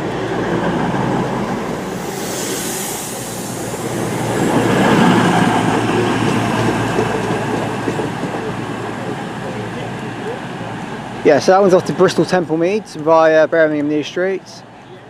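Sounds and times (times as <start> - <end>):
diesel train engines and wheels: 0.0 - 15.0
high hiss: 1.6 - 6.2.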